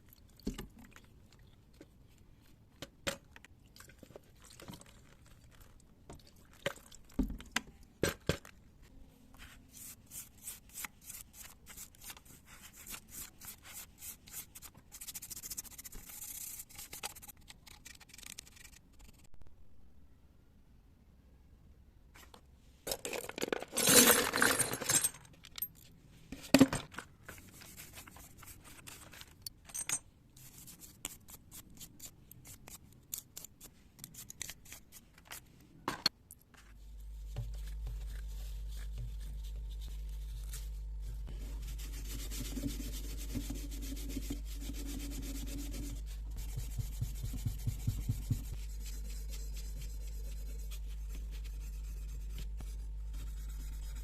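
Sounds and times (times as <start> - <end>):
steady low hum: 36.8 - 54.0.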